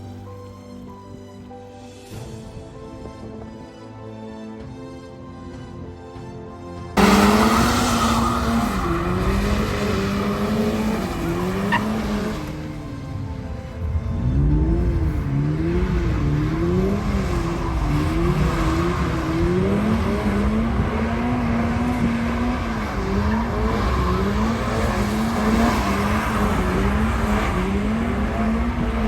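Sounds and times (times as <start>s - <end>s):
car engine revving: 7.0s - 29.0s.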